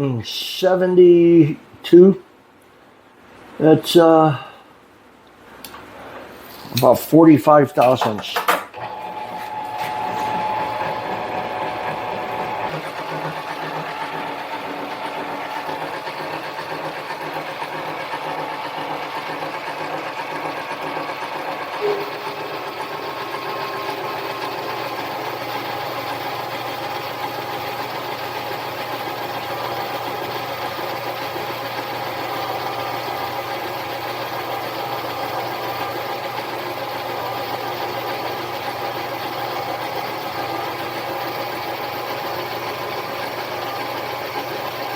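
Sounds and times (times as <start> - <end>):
mini lathe running: 8.8 - 44.9.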